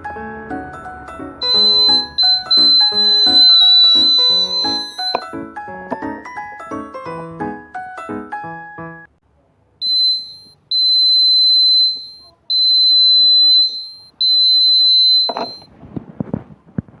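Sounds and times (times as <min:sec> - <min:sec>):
keyboard music: 0:00.0 - 0:08.6
electronic bike buzzer beeps: 0:01.4 - 0:05.2, 0:09.8 - 0:15.6
knocks and handling noise: 0:03.9 - 0:05.3, 0:15.2 - 0:17.0.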